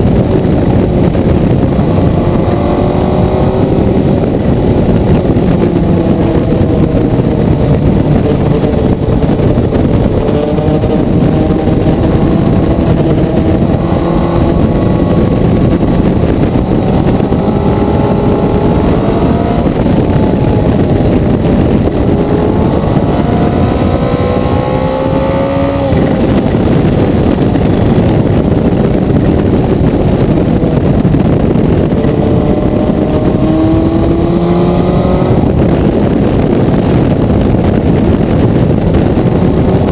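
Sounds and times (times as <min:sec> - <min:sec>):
motorcycle engine accelerating: 0:00.0 - 0:39.9
wind rushing: 0:00.0 - 0:39.9.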